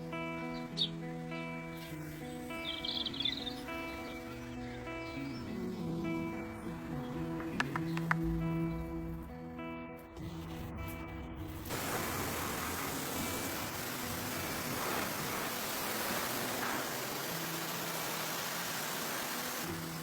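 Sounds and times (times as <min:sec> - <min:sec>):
spray hissing: 0:11.7 - 0:20.0.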